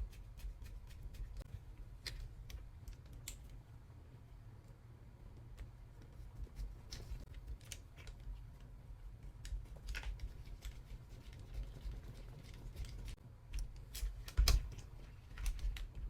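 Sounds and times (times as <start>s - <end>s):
low steady hum: 0.0s - 16.0s
small parts and tools clicking: 6.9s - 8.7s.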